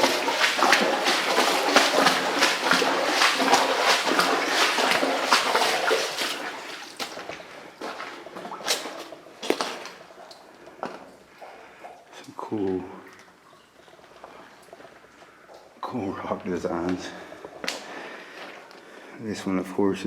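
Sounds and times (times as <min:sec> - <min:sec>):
feet splashing through water: 0:00.0 - 0:10.5.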